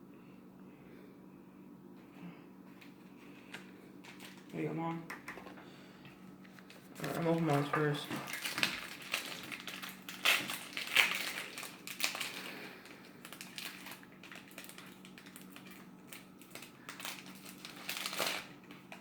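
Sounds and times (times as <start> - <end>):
wrapper and cards rustling: 2.8 - 5.3, 6.3 - 19.0
foil pack tearing: 4.0 - 4.6, 6.6 - 19.0.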